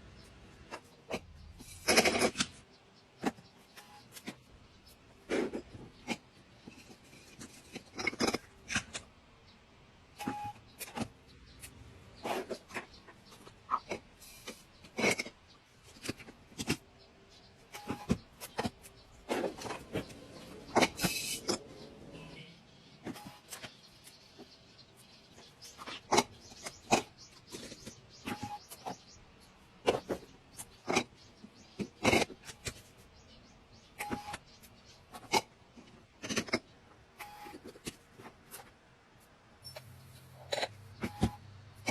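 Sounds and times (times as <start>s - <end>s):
containers and packaging clattering: 12.1s - 22.4s.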